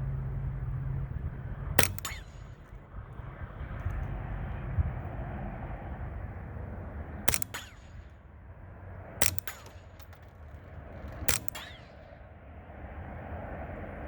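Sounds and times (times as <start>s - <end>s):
suppressed rifle shots: 1.7s - 4.0s, 7.2s - 8.3s, 9.2s - 12.3s
rifle action clicks: 1.8s - 2.8s, 7.3s - 8.1s, 9.2s - 12.0s.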